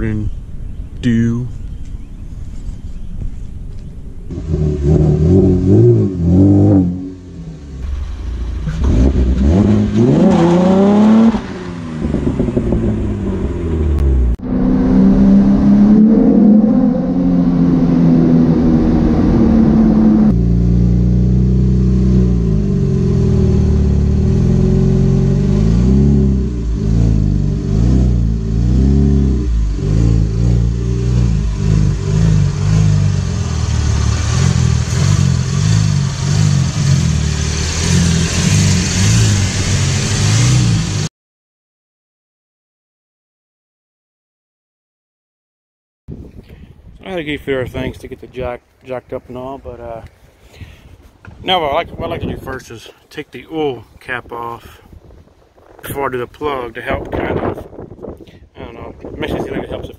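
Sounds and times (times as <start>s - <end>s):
car engine revving: 4.3s - 41.1s.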